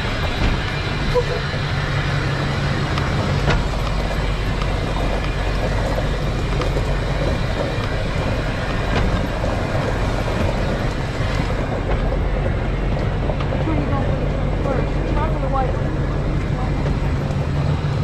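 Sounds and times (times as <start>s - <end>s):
vehicle engine and road noise: 0.0s - 18.0s.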